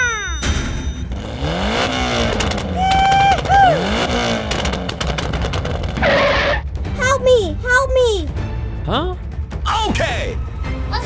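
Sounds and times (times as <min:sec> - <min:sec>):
vehicle engine revving: 0:01.0 - 0:06.8.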